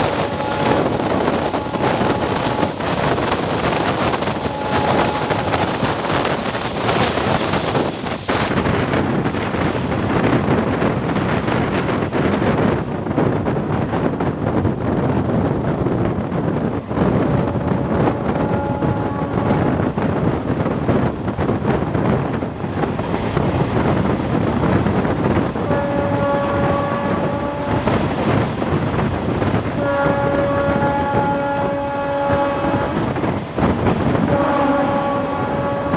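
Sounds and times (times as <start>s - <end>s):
faint locomotive horn: 0.0s - 6.4s, 17.6s - 19.8s, 25.7s - 28.0s, 29.8s - 33.3s, 34.2s - 35.9s
train coach running at speed: 0.0s - 35.9s
wind buffeting microphone: 0.0s - 35.9s.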